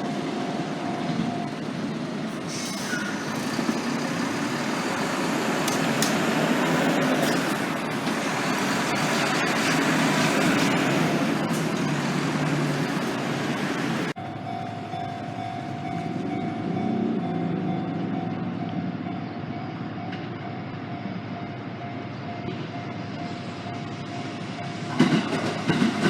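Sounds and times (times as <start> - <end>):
vehicle passing rumble: 3.1 - 14.4
sharp clicks: 5.6 - 6.2.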